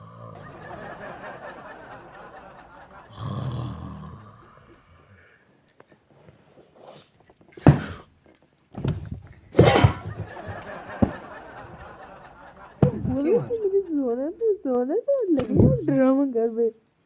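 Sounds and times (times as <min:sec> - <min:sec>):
man snoring and snorting: 0:00.0 - 0:00.6, 0:03.1 - 0:05.3.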